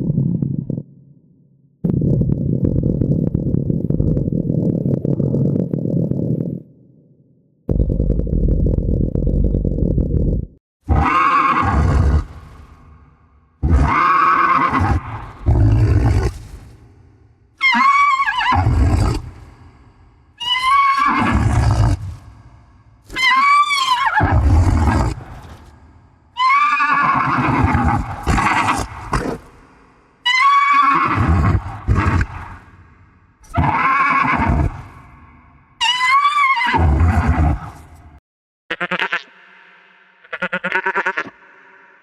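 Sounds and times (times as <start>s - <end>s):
creature whinnies: 23.1s - 25.2s, 35.8s - 37.7s.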